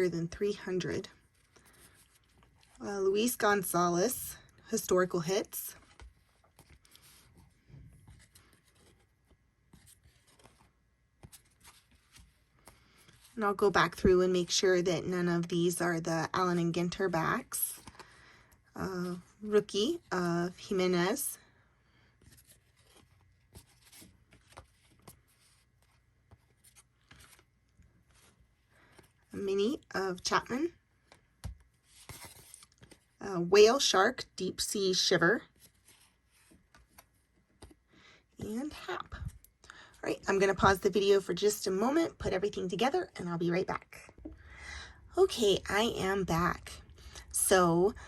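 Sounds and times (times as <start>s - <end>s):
trading cards rustling: 1.1s - 14.6s, 15.7s - 20.1s, 22.0s - 29.8s, 30.4s - 33.2s, 35.5s - 41.1s.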